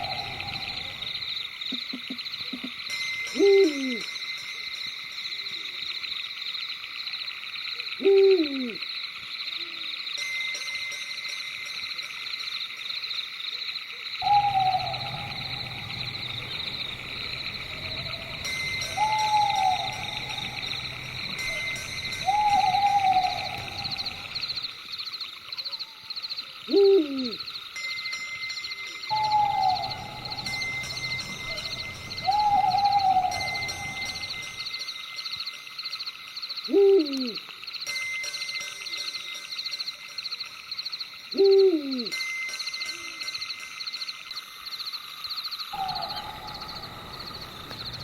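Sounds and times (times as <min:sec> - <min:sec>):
owls hooting: 0:00.0 - 0:01.9, 0:03.4 - 0:04.1, 0:08.0 - 0:08.8, 0:14.2 - 0:24.7, 0:26.7 - 0:27.4, 0:29.1 - 0:34.6, 0:36.7 - 0:37.4, 0:41.4 - 0:42.2, 0:45.8 - 0:48.0
pulsing night insect chorus: 0:00.0 - 0:48.0.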